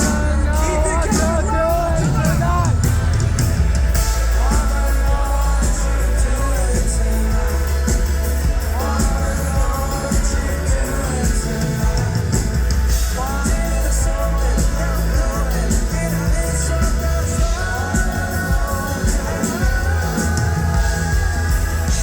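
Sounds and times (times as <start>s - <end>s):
live pop rock band: 0.0s - 22.0s
person singing: 0.0s - 22.0s.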